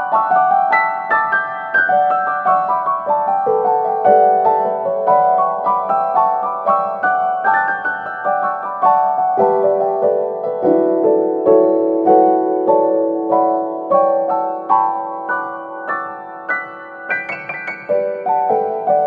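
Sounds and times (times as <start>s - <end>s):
soft piano music: 0.0s - 19.0s.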